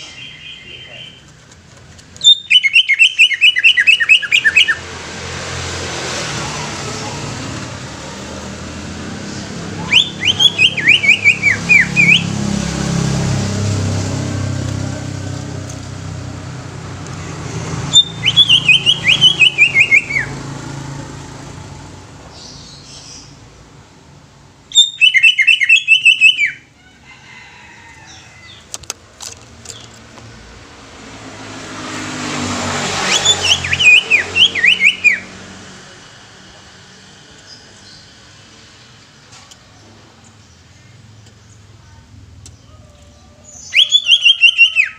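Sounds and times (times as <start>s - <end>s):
bird singing whistled notes: 2.2s - 4.8s, 9.8s - 12.3s, 17.9s - 20.3s, 24.7s - 26.6s, 33.0s - 35.2s, 43.4s - 44.9s.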